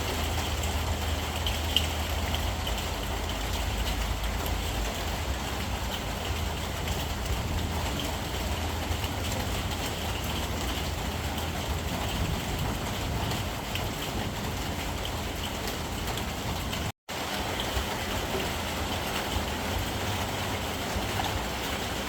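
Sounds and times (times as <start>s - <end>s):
steady rain hiss: 0.0s - 22.0s.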